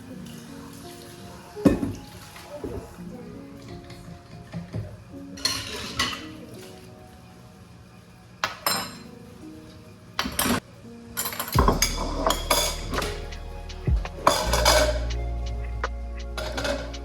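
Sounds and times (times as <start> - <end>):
soft lo-fi music: 0.0 - 17.0
pots and cutlery clanking: 3.7 - 6.4, 8.4 - 9.0.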